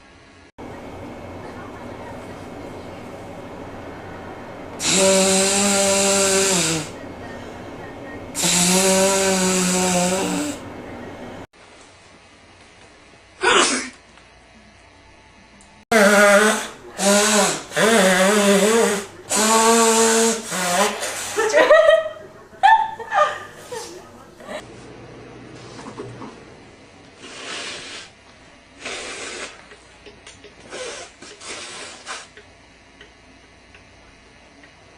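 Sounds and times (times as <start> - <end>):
person blowing nose: 4.8 - 7.0, 8.4 - 10.6, 15.9 - 21.5, 27.2 - 28.2, 28.8 - 29.7, 30.6 - 32.4.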